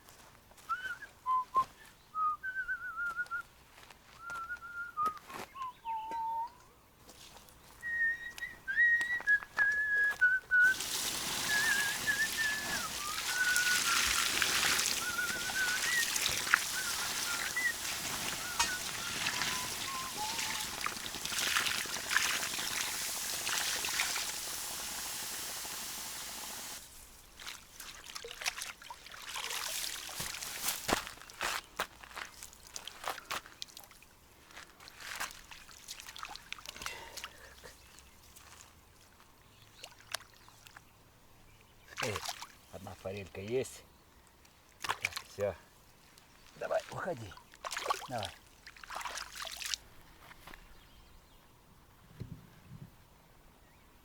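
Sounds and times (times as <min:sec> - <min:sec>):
person whistling a slow tune: 0:00.6 - 0:03.5, 0:04.1 - 0:06.7, 0:07.8 - 0:10.8, 0:11.4 - 0:20.7
steady hiss: 0:10.6 - 0:27.3
water splashing and dripping: 0:10.6 - 0:31.2, 0:34.8 - 0:39.2, 0:39.8 - 0:40.8, 0:42.0 - 0:42.6, 0:44.7 - 0:45.5, 0:46.4 - 0:49.9.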